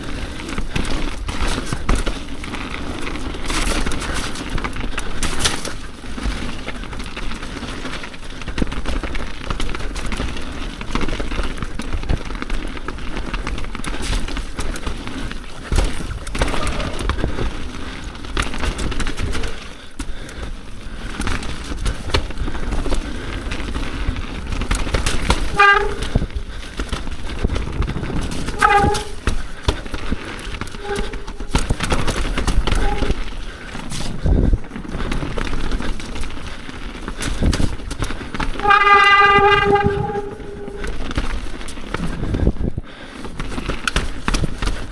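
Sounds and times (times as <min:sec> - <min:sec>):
bike tyre and chassis rattle: 0:00.0 - 0:44.9
disc brakes squealing: 0:25.1 - 0:26.2, 0:27.9 - 0:29.3, 0:30.2 - 0:33.3, 0:38.6 - 0:41.1.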